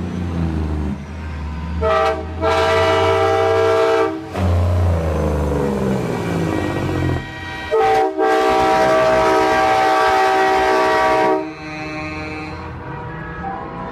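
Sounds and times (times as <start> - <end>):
air horn blast: 1.8 - 4.7, 6.6 - 13.1.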